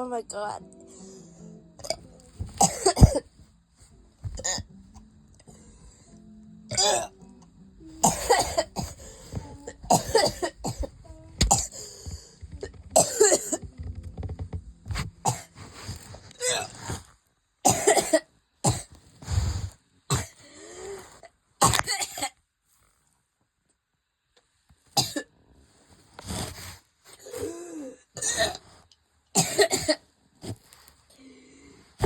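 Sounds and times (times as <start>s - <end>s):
person coughing: 1.8s - 3.3s, 4.2s - 4.7s, 6.7s - 7.1s, 8.0s - 11.9s, 13.0s - 13.6s, 16.4s - 16.9s, 17.7s - 18.9s, 20.1s - 20.4s, 21.6s - 22.3s, 27.3s - 28.6s, 29.4s - 30.0s.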